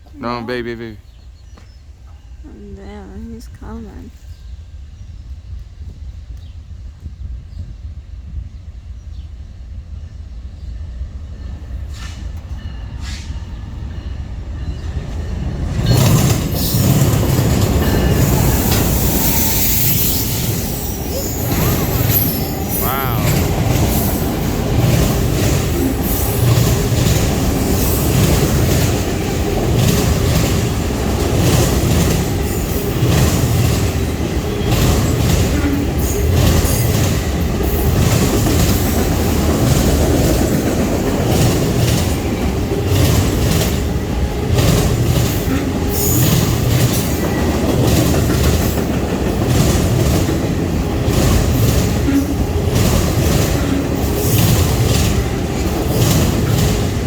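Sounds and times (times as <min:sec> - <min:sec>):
train wheels rumbling on rails: 0:01.1 - 0:57.0
wheels clacking over rail joints: 0:15.0 - 0:57.0.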